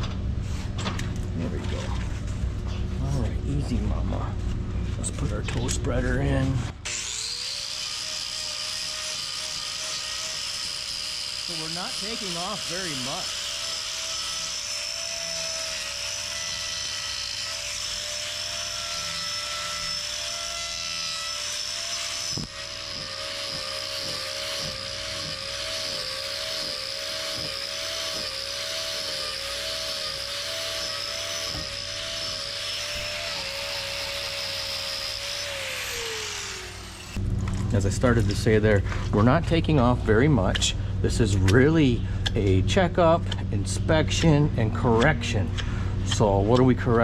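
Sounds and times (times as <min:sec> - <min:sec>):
angle grinder whining on hoof: 0:02.6 - 0:39.8.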